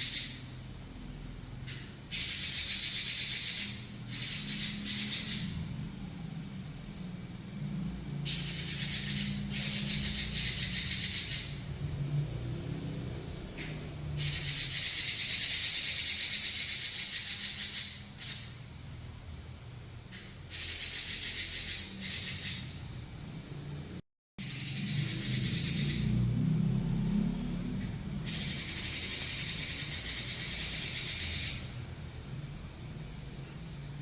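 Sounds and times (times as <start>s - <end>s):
bird singing rolling trills: 0.0s - 7.4s, 8.0s - 12.0s, 13.1s - 18.8s, 20.1s - 23.0s, 24.4s - 27.0s, 27.6s - 32.2s.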